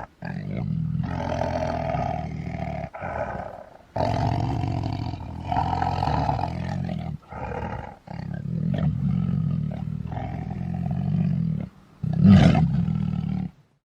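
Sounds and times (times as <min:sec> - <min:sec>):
tiger roaring: 0:00.0 - 0:13.6.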